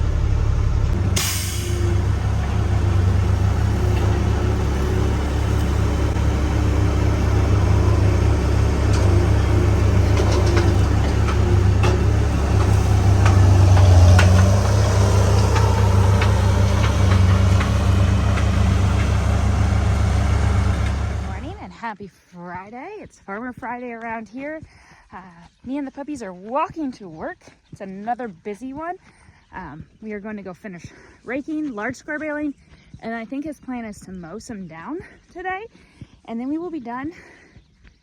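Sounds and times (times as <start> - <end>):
tractor engine running: 0.0 - 21.8
light clicks and rattles: 3.1 - 19.5.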